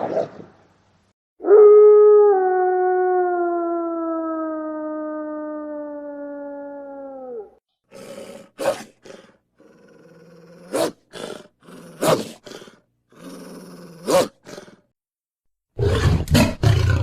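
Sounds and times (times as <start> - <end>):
wolf howling: 1.4 - 7.6
wolf growling and snarling: 7.9 - 14.9, 15.8 - 17.0.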